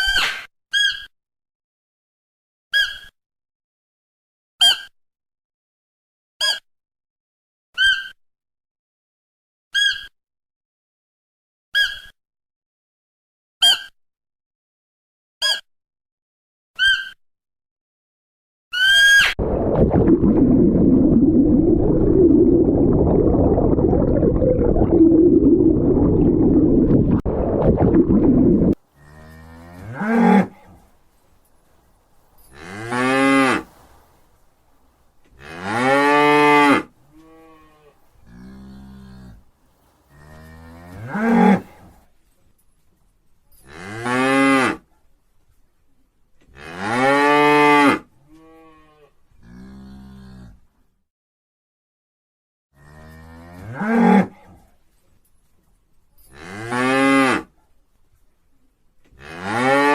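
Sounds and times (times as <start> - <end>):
cow mooing: 28.6 - 30.9, 32.4 - 33.8, 35.4 - 39.5, 40.1 - 42.0, 46.6 - 50.6, 59.2 - 59.9.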